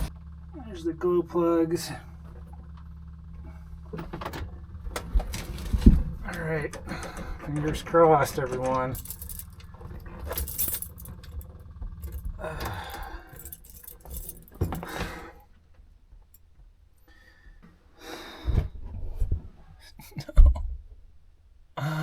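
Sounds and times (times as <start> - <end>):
keys jangling in ignition: 5.2 - 15.3.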